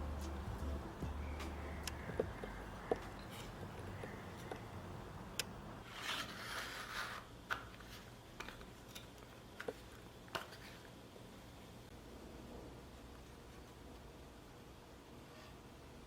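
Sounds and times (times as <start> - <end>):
scraping rustle: 5.8 - 8.1.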